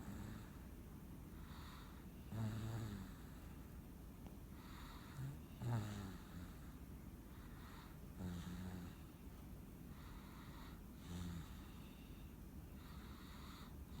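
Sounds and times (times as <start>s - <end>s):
low snoring snorts: 2.3s - 3.4s, 4.9s - 6.8s, 8.2s - 9.1s.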